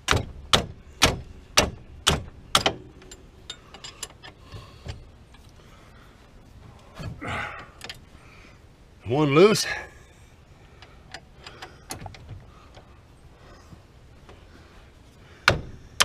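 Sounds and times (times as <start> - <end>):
sharp metallic knocks: 0.0 - 5.0
metal ticks and rattles: 0.0 - 5.6, 10.7 - 14.4.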